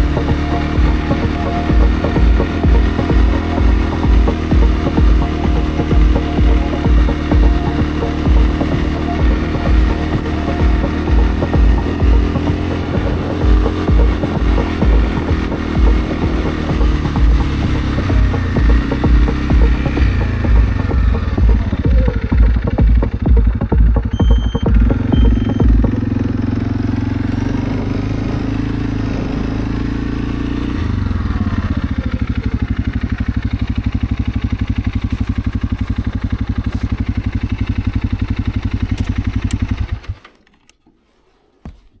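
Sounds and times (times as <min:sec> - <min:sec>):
engine idling: 0:00.0 - 0:28.2.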